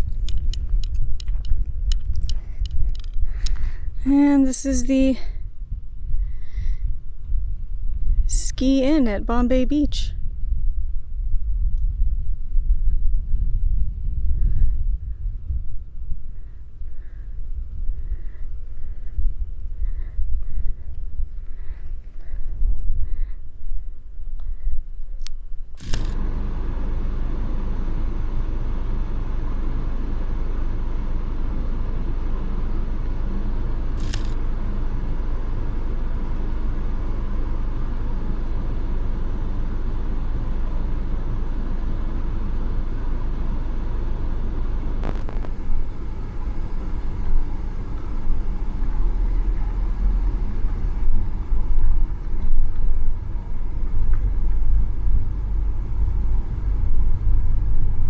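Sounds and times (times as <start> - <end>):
wind buffeting the microphone: 0.0 - 4.0, 5.3 - 8.3, 10.1 - 25.7
brief clicks: 25.2 - 26.2, 34.0 - 34.4.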